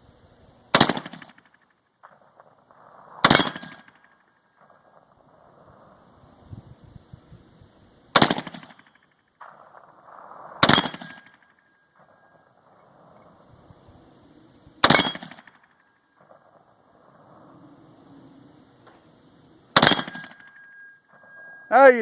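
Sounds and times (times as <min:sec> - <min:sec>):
rifle shots: 0:00.7 - 0:05.7, 0:08.1 - 0:13.6, 0:14.8 - 0:17.4, 0:19.7 - 0:21.4.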